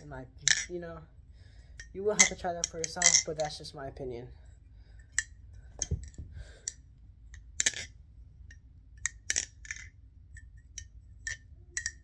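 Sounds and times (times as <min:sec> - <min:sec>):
butterfly knife metal clicks: 0:10.8 - 0:12.0.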